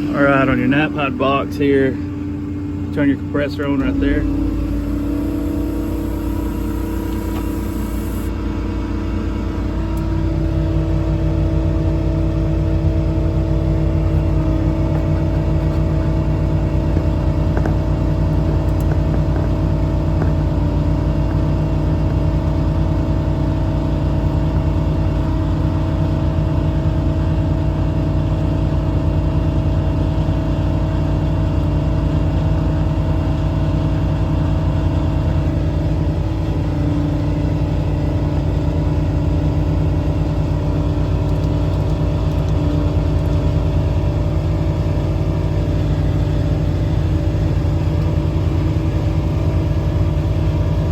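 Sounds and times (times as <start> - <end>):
diesel engine running: 0.0 - 50.9
hydraulic air compressor: 3.8 - 8.4.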